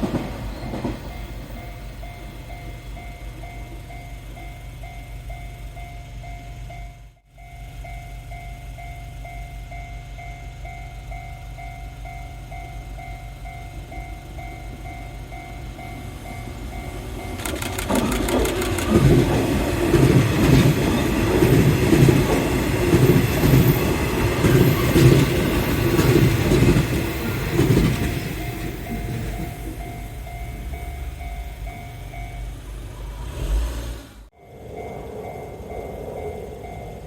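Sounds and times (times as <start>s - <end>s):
train wheels clattering over rail joints: 0.0s - 1.6s, 17.0s - 30.0s
level-crossing bell dinging: 0.5s - 33.0s, 34.3s - 37.0s.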